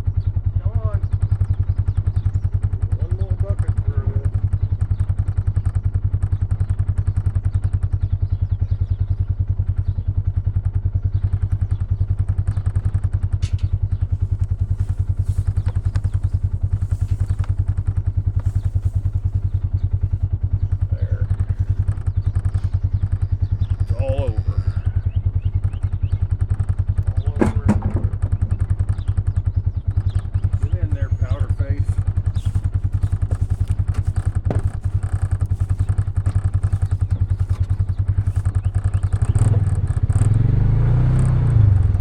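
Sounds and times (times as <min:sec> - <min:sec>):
vehicle engine running steadily: 0:00.0 - 0:42.0
knocks and rattles: 0:13.3 - 0:22.8, 0:26.4 - 0:39.8.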